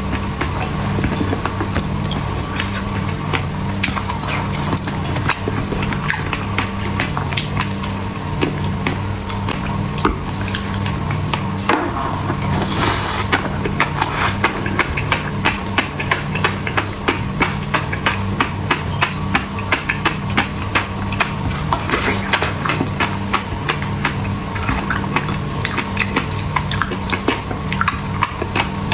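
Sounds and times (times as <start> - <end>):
refrigerator humming: 0.0 - 28.9
short hisses: 12.5 - 13.4, 14.0 - 14.4.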